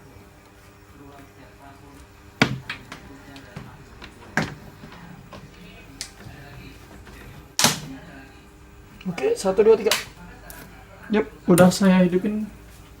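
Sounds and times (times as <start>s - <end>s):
faint music: 0.0s - 13.0s
plug clicking into wall socket: 7.6s - 7.9s.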